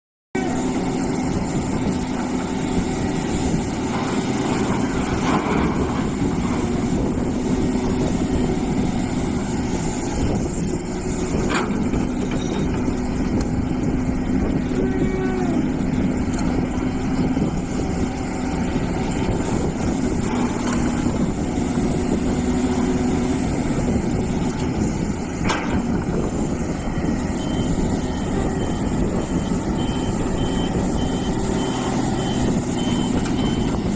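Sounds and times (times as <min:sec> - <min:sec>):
excavator engine and hydraulics: 0:00.4 - 0:33.9
reversing alarm beeping: 0:27.0 - 0:33.9.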